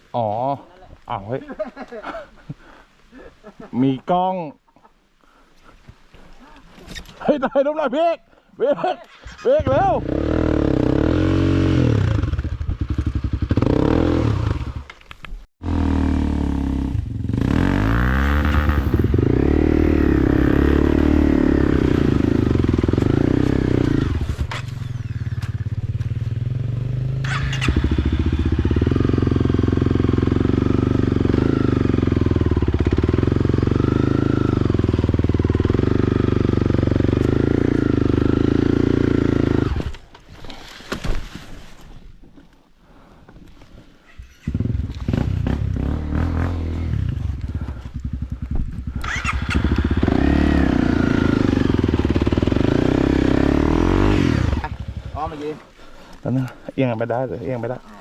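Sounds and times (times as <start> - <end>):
motorcycle engine running: 9.7 - 14.8, 15.6 - 39.8, 44.4 - 56.2.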